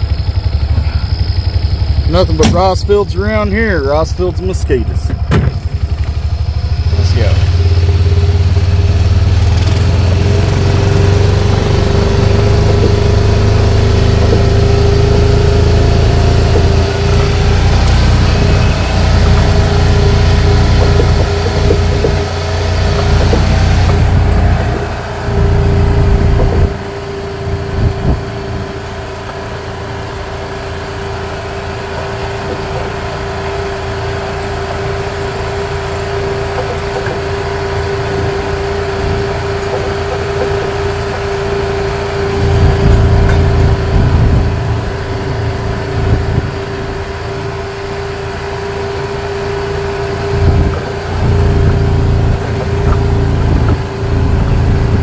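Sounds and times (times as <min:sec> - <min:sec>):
road noise: 0:00.0 - 0:55.0
vehicle engine drone: 0:00.0 - 0:55.0
wind buffeting microphone: 0:16.6 - 0:28.8, 0:42.4 - 0:45.3, 0:50.2 - 0:55.0.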